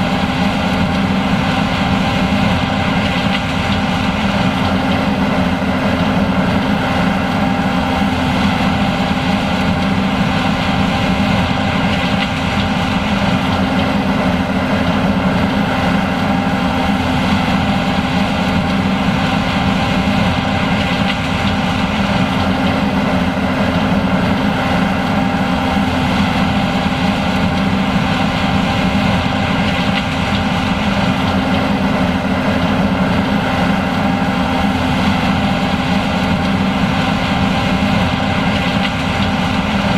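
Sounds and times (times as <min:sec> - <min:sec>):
combine harvester droning: 0:00.0 - 0:39.9.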